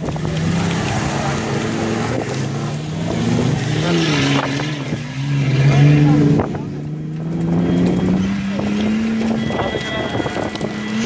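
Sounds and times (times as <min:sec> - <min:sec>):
engine running hard: 0:00.0 - 0:11.0.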